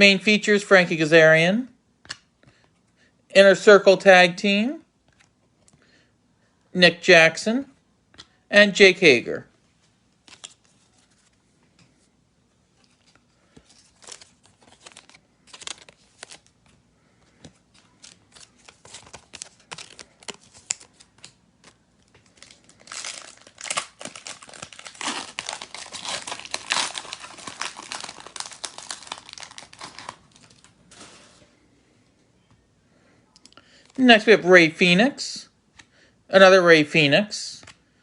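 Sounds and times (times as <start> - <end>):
foil wrapper crinkling and tearing: 13.8 - 16.5, 17.8 - 31.0.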